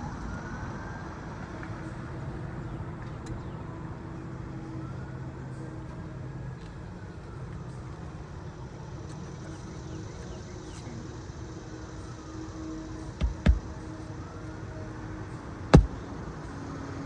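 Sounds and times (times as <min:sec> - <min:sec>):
distant road traffic hum: 0:00.0 - 0:17.0
sharp knocks: 0:13.2 - 0:13.8, 0:15.8 - 0:16.0.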